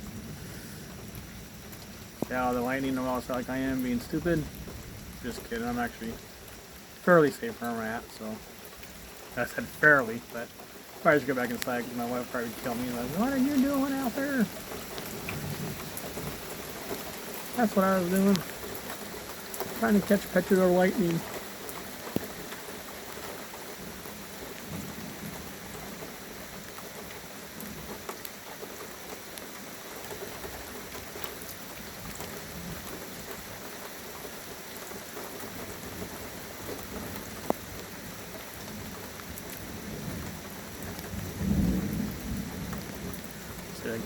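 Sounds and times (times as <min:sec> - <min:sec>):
steady rain falling: 0:00.0 - 0:44.0
low rumble of thunder: 0:14.4 - 0:16.5, 0:36.8 - 0:44.0.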